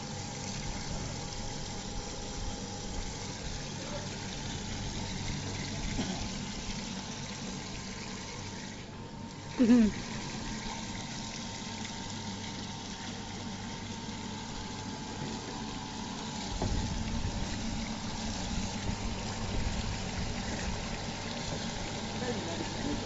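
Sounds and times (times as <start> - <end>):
water churning and flowing: 0.0 - 23.0.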